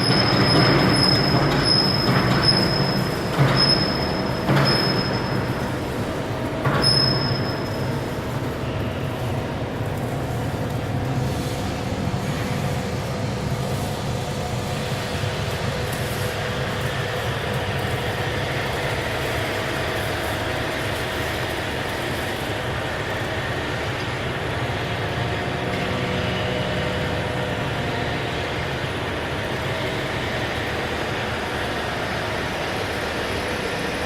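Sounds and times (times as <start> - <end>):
machine rumbling: 0.0 - 20.0.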